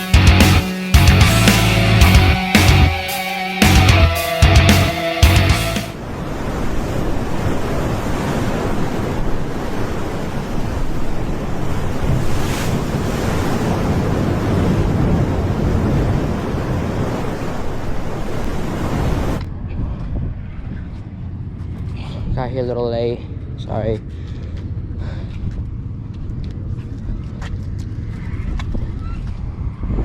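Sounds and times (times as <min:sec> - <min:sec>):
rock music: 0:00.0 - 0:06.0
wind and surf rushing: 0:00.0 - 0:26.1
wind buffeting the microphone: 0:06.0 - 0:30.0.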